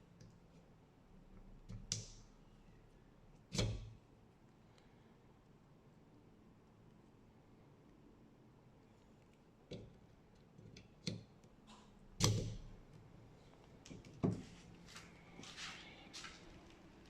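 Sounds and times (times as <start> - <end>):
faint rustling and scraping: 13.3 - 17.0.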